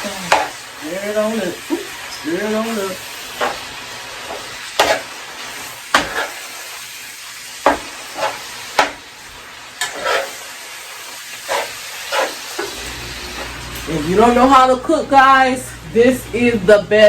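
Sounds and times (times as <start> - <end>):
vegetables sizzling in a frying pan: 0.0 - 17.0
spoon scraping and knocking on pan: 0.3 - 0.6, 3.3 - 5.1, 5.9 - 6.6, 7.6 - 9.1, 9.8 - 10.5, 11.4 - 13.6.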